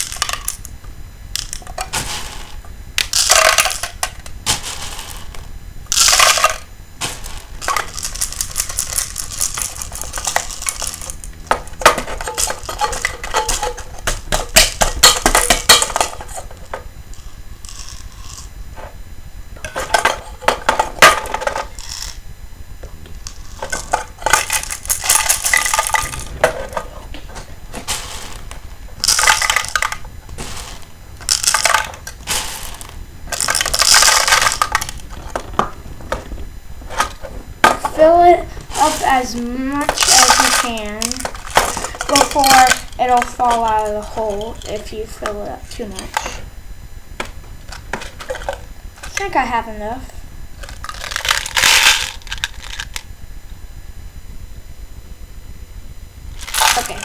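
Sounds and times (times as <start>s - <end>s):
plastic pellets rattling in a can: 0.0s - 0.6s, 1.3s - 16.5s, 21.0s - 22.2s, 23.2s - 26.8s, 27.7s - 35.7s, 37.0s - 45.5s, 50.6s - 53.0s, 56.4s - 57.0s.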